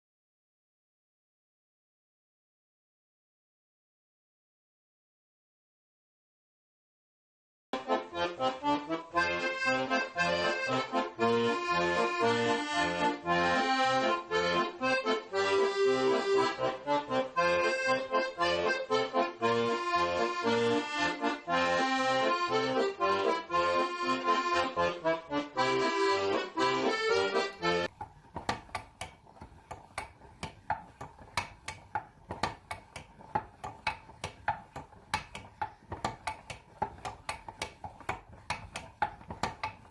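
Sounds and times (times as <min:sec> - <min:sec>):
instrumental music with bass: 0:07.8 - 0:27.9.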